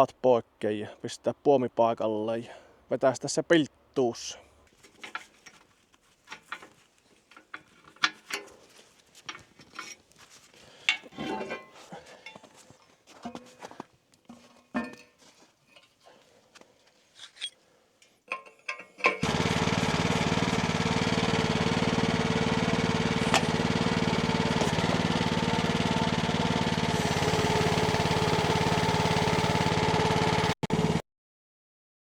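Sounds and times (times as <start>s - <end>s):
small petrol engine running: 19.2s - 31.0s.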